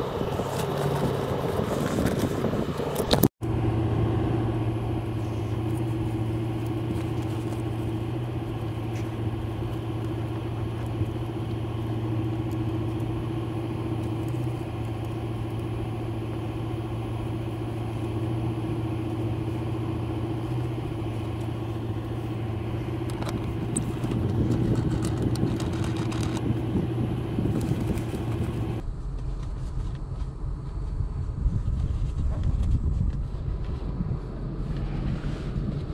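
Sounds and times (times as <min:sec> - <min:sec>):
car engine droning: 0:00.0 - 0:35.9.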